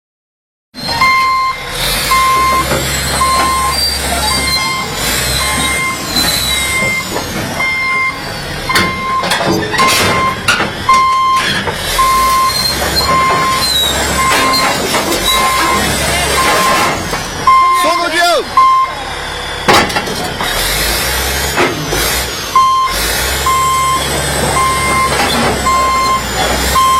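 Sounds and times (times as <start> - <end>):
high squeals: 0.8 - 19.6, 20.2 - 26.9
diesel engine running: 0.8 - 26.9
backup alarm beeping: 0.9 - 19.0, 22.5 - 26.9
metallic clanks: 8.7 - 17.6.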